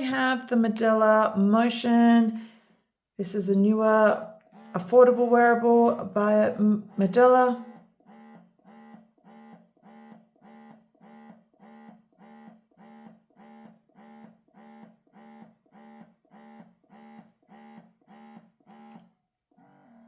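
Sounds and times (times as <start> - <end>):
breast pump motor buzzing pulses: 4.1 - 20.0.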